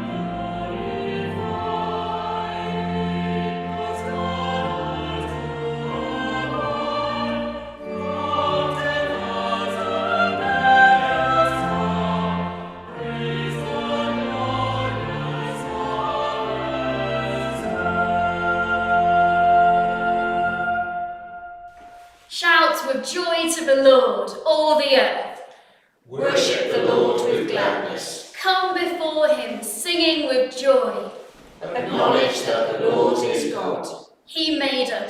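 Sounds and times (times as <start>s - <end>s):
choir singing sacred music: 0.0s - 22.2s, 26.1s - 28.4s, 31.2s - 34.2s.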